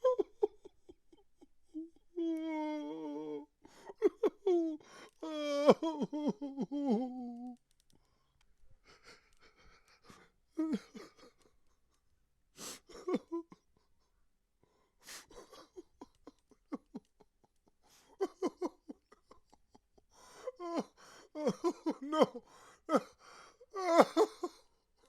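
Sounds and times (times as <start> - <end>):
man crying: 0.0 - 7.6, 8.9 - 11.4, 12.9 - 13.6, 15.1 - 17.1, 18.1 - 19.4, 20.3 - 23.1, 23.8 - 24.6.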